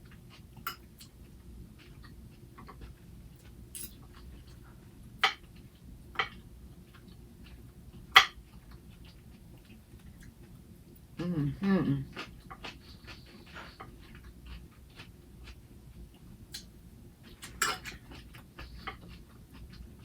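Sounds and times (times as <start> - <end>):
chewing salad: 0.0 - 20.0.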